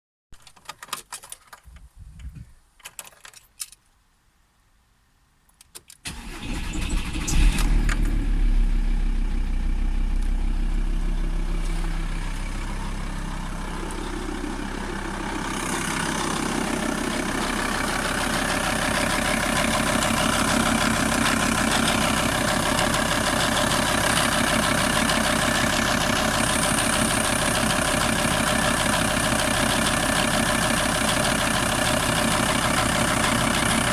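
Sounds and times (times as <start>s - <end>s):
diesel engine starting and idling: 6.0s - 33.9s.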